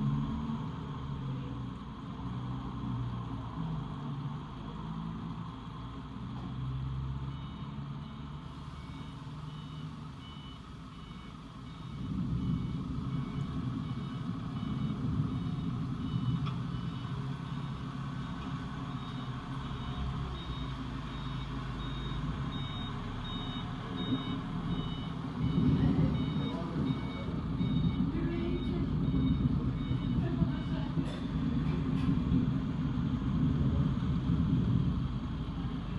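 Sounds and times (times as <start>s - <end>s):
reversing alarm beeping: 7.2s - 31.0s
engine running: 8.4s - 35.9s.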